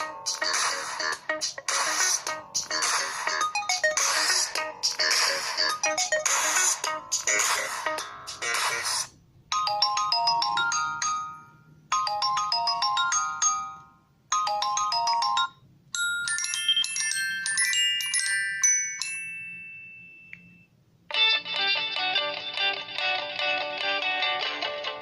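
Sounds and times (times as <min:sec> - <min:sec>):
phone ringtone bell-like melody: 0:00.0 - 0:08.4, 0:09.5 - 0:20.7.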